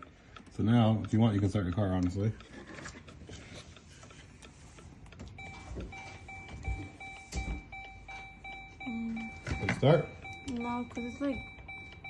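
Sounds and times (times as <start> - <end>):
dashboard warning chime: 5.3 - 12.0.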